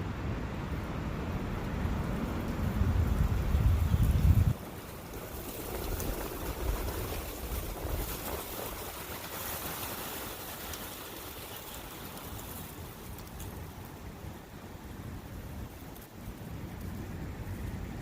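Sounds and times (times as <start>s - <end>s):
wind gusting: 0.0s - 18.0s.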